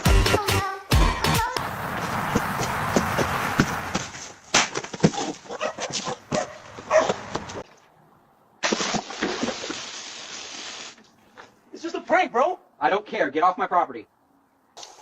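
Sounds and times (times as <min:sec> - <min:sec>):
dog barking: 0:05.2 - 0:07.2.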